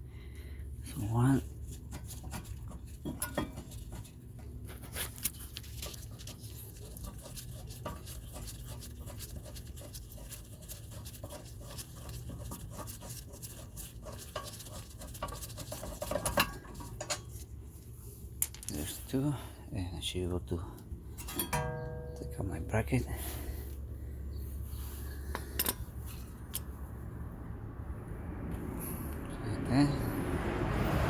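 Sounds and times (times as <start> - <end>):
steady low hum: 0.0 - 30.9.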